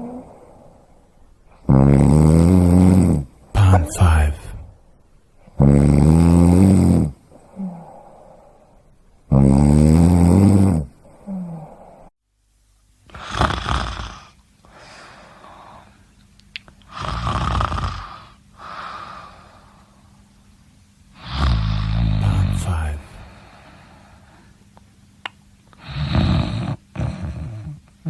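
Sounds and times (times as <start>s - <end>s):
person snoring: 0.0s - 0.9s, 1.6s - 4.7s, 5.5s - 8.6s, 9.3s - 12.1s, 13.1s - 15.9s, 16.9s - 19.7s, 21.2s - 23.9s, 25.8s - 27.8s.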